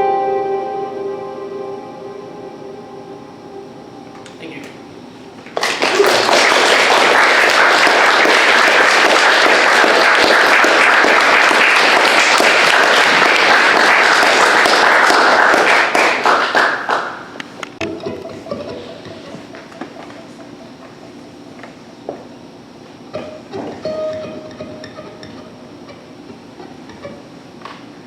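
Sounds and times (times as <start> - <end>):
audience applauding: 5.5 - 17.5.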